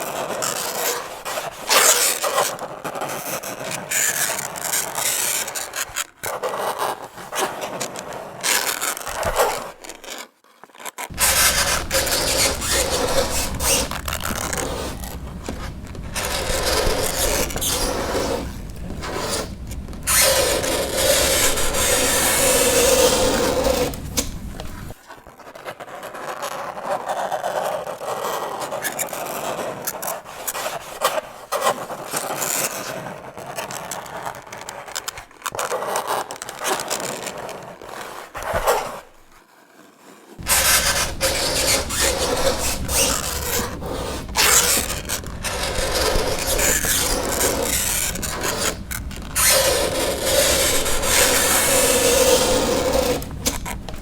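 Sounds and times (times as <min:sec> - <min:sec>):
fingernails scraping chalkboard: 0:11.1 - 0:25.0, 0:39.7 - 0:54.0.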